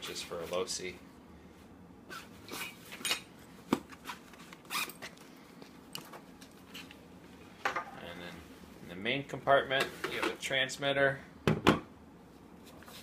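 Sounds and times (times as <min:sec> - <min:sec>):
bag zipper being pulled: 0:04.0 - 0:05.0.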